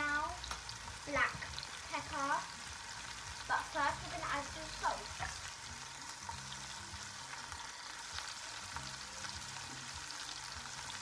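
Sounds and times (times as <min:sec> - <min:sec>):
mushrooms sizzling in oil: 0:00.0 - 0:11.0.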